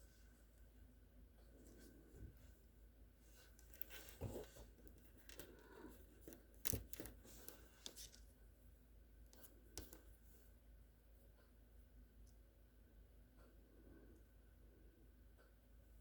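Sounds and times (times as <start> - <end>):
soft rustles: 1.4 - 8.5.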